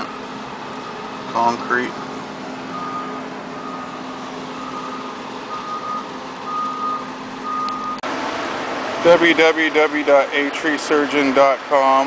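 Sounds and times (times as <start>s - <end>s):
vehicle back-up alarm beeping: 0.0s - 1.9s, 2.6s - 8.1s
engine drone: 0.0s - 12.0s.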